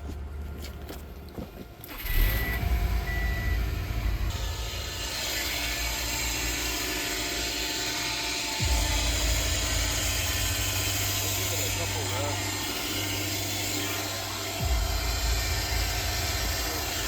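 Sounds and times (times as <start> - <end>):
car engine starting and running: 0.0 - 17.0
short beeps: 2.2 - 3.7.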